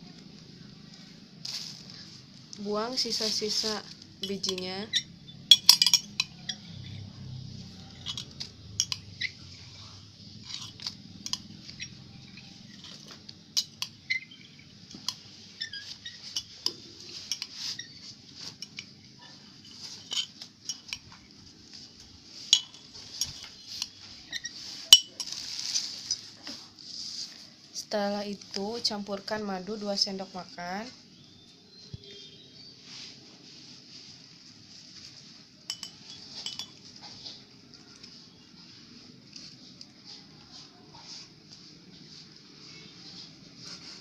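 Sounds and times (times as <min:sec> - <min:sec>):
background hiss: 0:00.0 - 0:04.2
metal spoon clinking on glass: 0:04.2 - 0:09.4, 0:10.4 - 0:17.9, 0:18.6 - 0:21.2, 0:22.5 - 0:25.4, 0:35.7 - 0:36.9.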